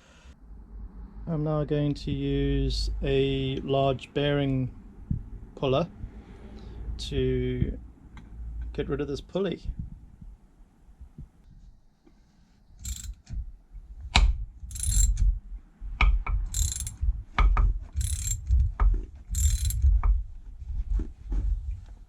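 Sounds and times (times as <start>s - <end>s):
metallic clicks and knocks: 12.8s - 13.2s, 14.7s - 15.2s, 16.5s - 17.0s, 18.0s - 18.6s, 19.4s - 19.9s
ratchet wrench rasping: 12.8s - 13.2s, 14.7s - 15.2s, 16.5s - 17.0s, 18.0s - 18.5s, 19.3s - 19.8s.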